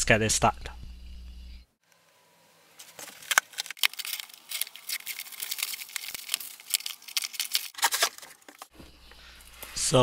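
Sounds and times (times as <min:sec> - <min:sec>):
cardboard packaging rustling: 0:02.8 - 0:08.8.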